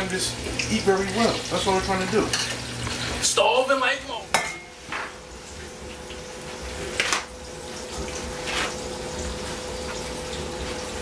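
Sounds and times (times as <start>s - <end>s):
food frying in hot oil: 0.0s - 11.0s
cookware knocks: 4.3s - 4.7s.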